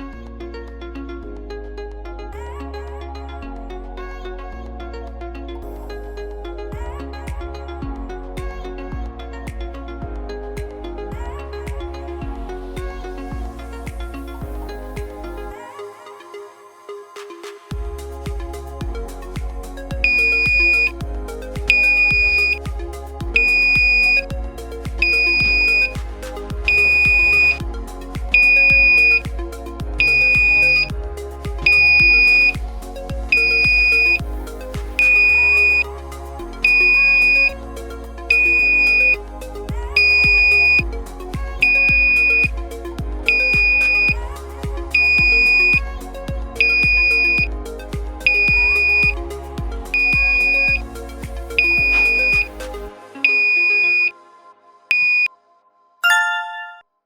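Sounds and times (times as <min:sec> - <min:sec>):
background music: 0:00.0 - 0:56.9
high-pitched electronic beep: 0:20.0 - 0:21.0, 0:21.7 - 0:22.6, 0:23.4 - 0:24.3, 0:25.0 - 0:26.0, 0:26.7 - 0:27.6, 0:28.3 - 0:29.2, 0:30.0 - 0:30.9, 0:31.6 - 0:32.6, 0:33.3 - 0:34.2, 0:35.0 - 0:35.9, 0:36.6 - 0:37.5, 0:38.3 - 0:39.2, 0:39.9 - 0:40.9, 0:41.6 - 0:42.5, 0:43.3 - 0:44.2, 0:44.9 - 0:45.9, 0:46.6 - 0:47.5, 0:49.9 - 0:50.8, 0:51.6 - 0:52.5, 0:53.2 - 0:54.1, 0:54.9 - 0:55.3, 0:56.0 - 0:56.9.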